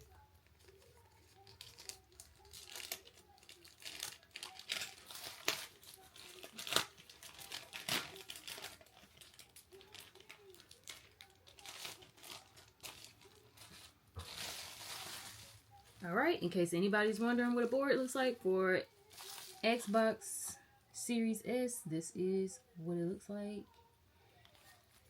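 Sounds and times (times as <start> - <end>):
plastic wrapping crinkling: 0.0 - 16.4, 19.0 - 20.0.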